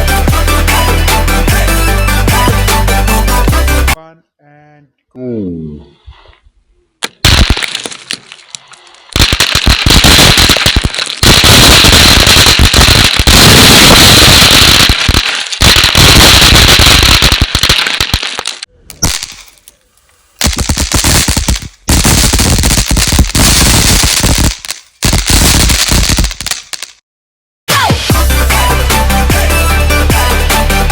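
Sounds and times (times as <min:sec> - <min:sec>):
firecrackers crackling: 0:07.0 - 0:19.8, 0:20.4 - 0:27.0.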